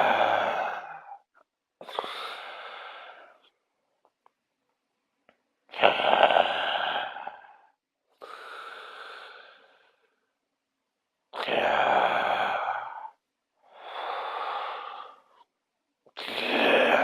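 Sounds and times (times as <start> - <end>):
person snoring: 0.0 - 1.2, 5.7 - 7.7, 11.4 - 15.3, 16.2 - 17.0
person breathing: 0.0 - 3.6, 5.7 - 10.3, 11.4 - 15.5, 16.1 - 17.0.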